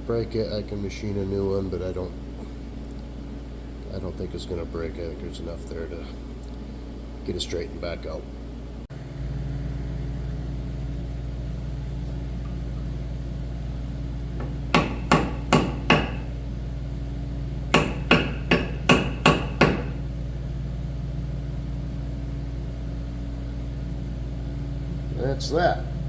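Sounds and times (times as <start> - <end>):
hammer striking metal shaft: 14.4 - 16.3, 17.7 - 20.0.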